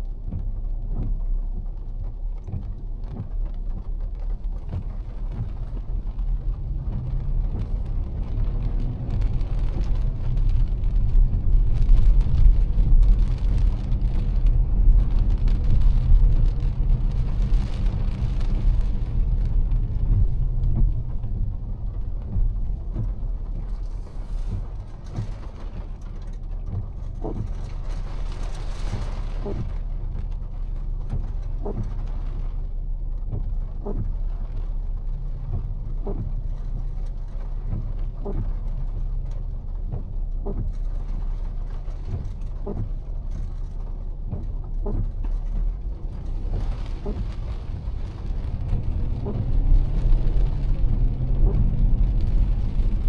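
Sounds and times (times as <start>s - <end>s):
tyres and engine rumbling: 0.0s - 53.0s
rain and spray hissing: 2.9s - 53.0s.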